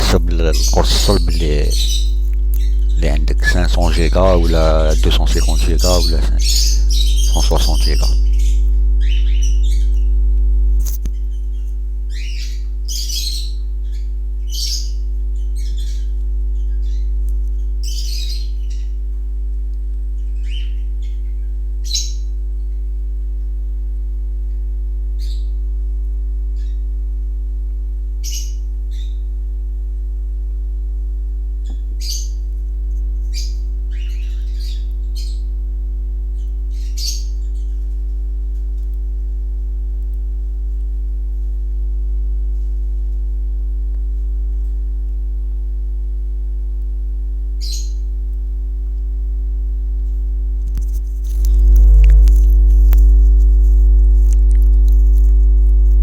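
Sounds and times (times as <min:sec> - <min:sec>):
electrical hum: 0:00.0 - 0:11.1, 0:50.6 - 0:56.0.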